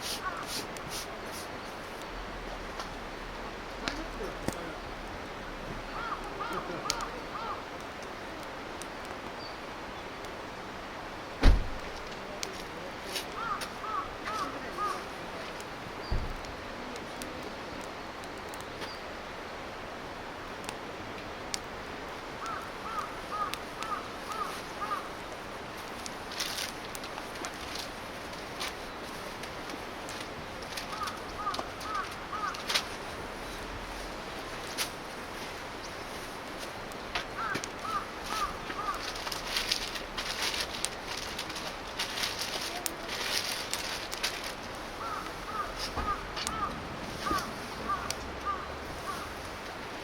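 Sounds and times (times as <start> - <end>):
background hiss: 0.0 - 50.0
crow cawing: 0.1 - 0.6, 5.9 - 7.7, 13.3 - 15.1, 22.4 - 25.2, 30.9 - 32.7, 37.4 - 39.2, 44.9 - 49.5.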